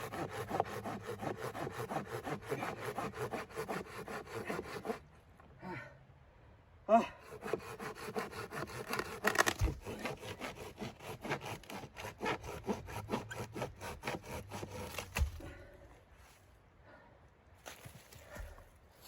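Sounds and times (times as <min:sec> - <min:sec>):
hand saw cutting wood: 0:00.0 - 0:05.0, 0:07.2 - 0:15.5.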